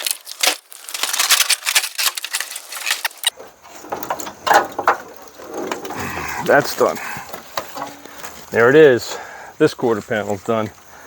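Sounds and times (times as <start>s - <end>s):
sheet metal crackling and clattering: 0.0s - 8.4s
metal knocks and scrapes: 2.9s - 8.4s.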